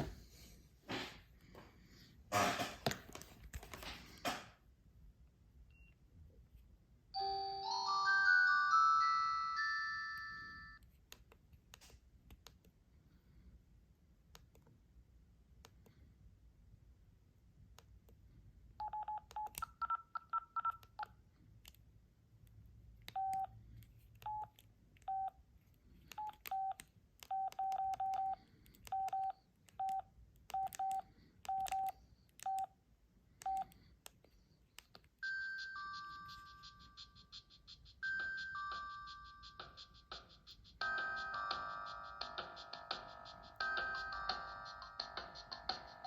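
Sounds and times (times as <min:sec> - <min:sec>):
electronic ringtone: 0:07.2 - 0:10.8, 0:35.2 - 0:46.0
keypad beeps: 0:18.8 - 0:21.1, 0:23.1 - 0:23.6, 0:24.2 - 0:24.5, 0:25.1 - 0:25.4, 0:26.1 - 0:32.7, 0:33.4 - 0:33.7, 0:35.2 - 0:40.3.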